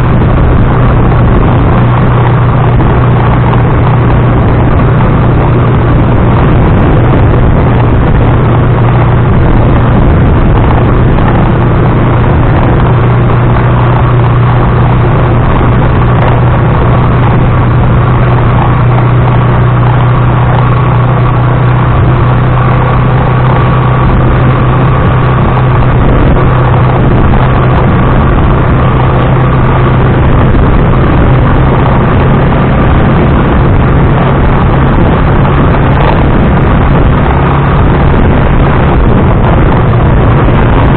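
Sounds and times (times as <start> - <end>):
motorcycle engine drone: 0.0 - 40.9
road rumble and vibration: 0.0 - 40.9.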